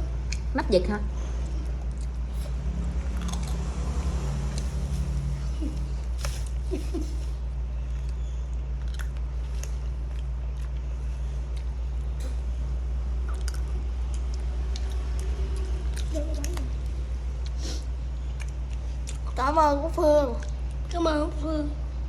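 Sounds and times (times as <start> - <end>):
steady low hum: 0.0 - 22.0
person chewing and crunching food: 1.4 - 5.4, 7.8 - 19.4.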